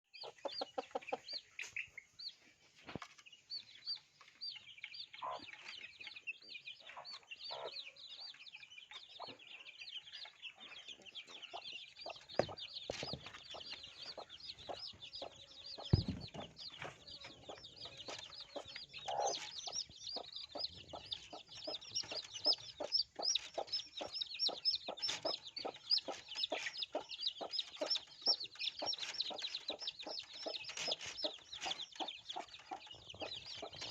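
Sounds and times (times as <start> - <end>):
baby chicks peeping: 0.1 - 33.9
loud knocks: 15.9 - 16.6.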